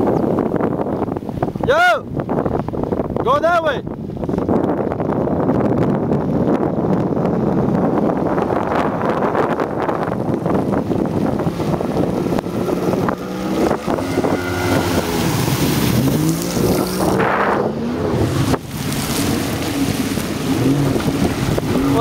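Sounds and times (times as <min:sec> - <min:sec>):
water rushing: 0:00.0 - 0:22.0
wind on microphone: 0:00.0 - 0:22.0
jet ski engine revving: 0:05.7 - 0:22.0.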